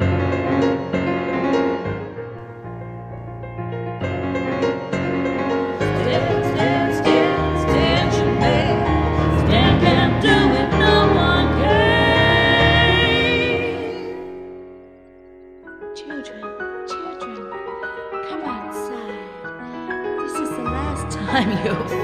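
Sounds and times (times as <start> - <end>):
piano chords: 0.0 - 22.0
person singing with vibrato: 5.8 - 14.5.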